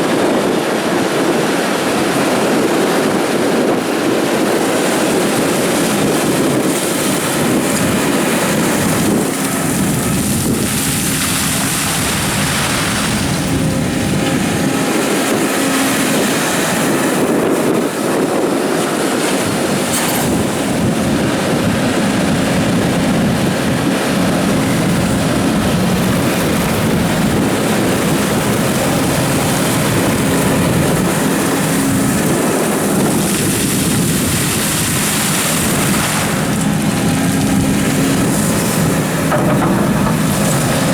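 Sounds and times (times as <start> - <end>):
excavator diesel engine under load: 0.1 - 40.9.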